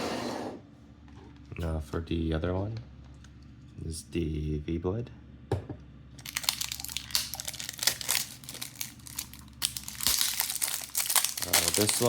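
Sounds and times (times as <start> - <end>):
packaging crinkling: 6.2 - 12.0.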